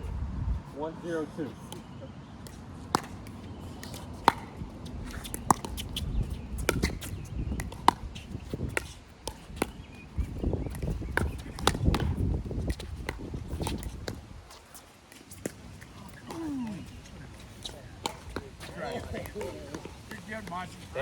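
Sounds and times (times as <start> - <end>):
wind rumble on microphone: 0.0 - 0.9, 4.5 - 14.5
paddles striking plastic ball: 2.4 - 4.6, 6.6 - 14.2.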